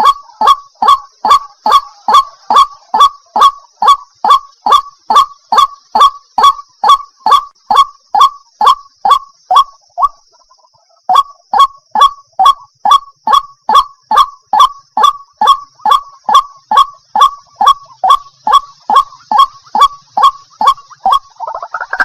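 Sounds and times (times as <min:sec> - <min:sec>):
waterhen calling: 0:00.0 - 0:22.0.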